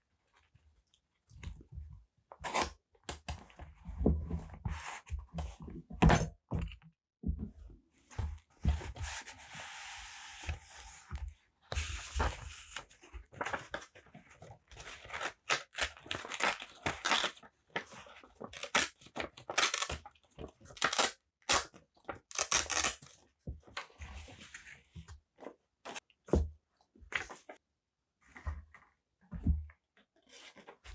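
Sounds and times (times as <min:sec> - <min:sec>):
paper tearing and rustling: 0:14.9 - 0:17.4, 0:18.5 - 0:20.0, 0:20.8 - 0:21.7, 0:22.3 - 0:23.1.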